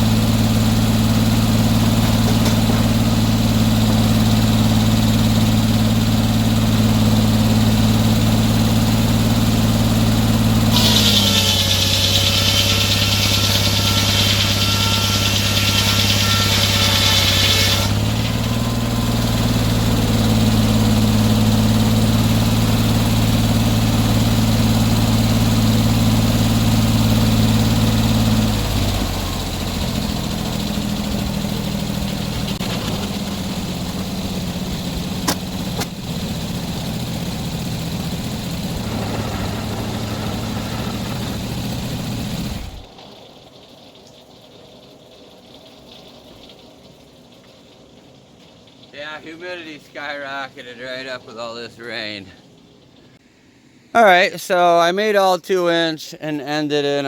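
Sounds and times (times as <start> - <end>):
sawmill engine running: 0.0 - 43.0
loud harsh hiss: 10.6 - 21.6, 37.6 - 42.9.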